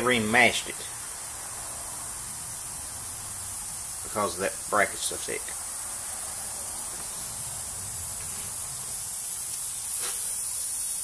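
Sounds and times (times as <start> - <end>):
high-pitched hiss: 0.0 - 11.0.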